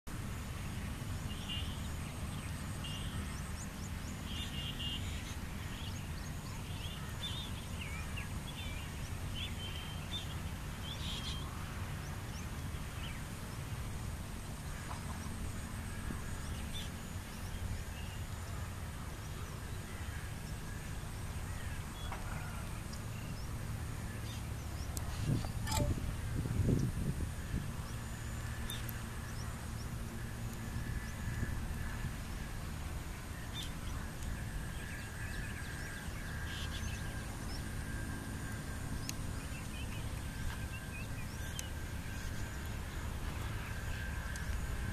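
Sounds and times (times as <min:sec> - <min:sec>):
sharp click: 0:25.4 - 0:26.1
small birds chirping: 0:39.0 - 0:44.6.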